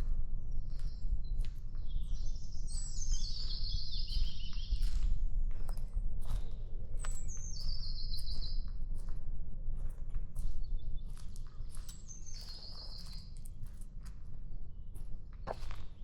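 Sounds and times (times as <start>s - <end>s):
small bird singing: 1.8s - 4.9s, 7.0s - 8.7s.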